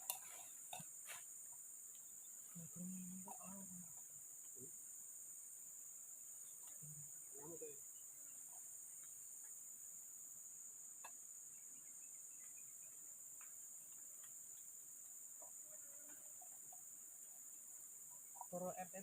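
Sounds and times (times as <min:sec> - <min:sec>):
forest insects chorus: 0:00.0 - 0:19.0.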